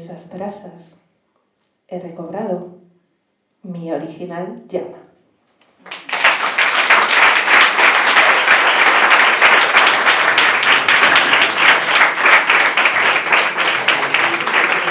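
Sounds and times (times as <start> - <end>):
audience applauding: 5.6 - 14.9.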